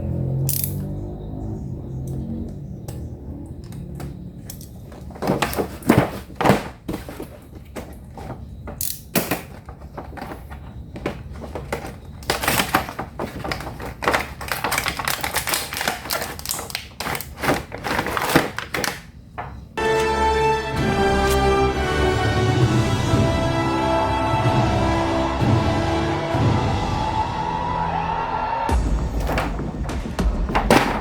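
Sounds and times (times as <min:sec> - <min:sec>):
packaging knocks and clicks: 0:02.5 - 0:19.8, 0:29.0 - 0:31.0
packaging crackling and rustling: 0:04.2 - 0:19.8, 0:29.0 - 0:31.0.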